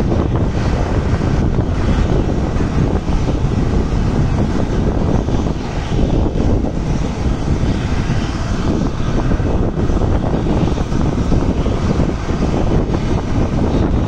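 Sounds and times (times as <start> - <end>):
jet engines running: 0.0 - 14.0.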